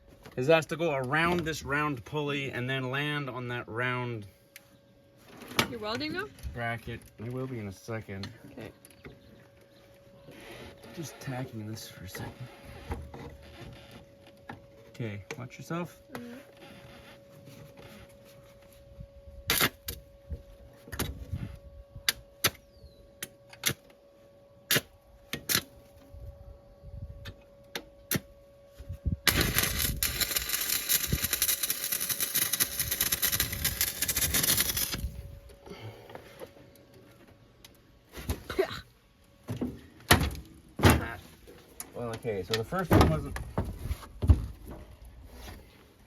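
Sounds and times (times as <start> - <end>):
arc welding crackle: 29.2 - 35.2.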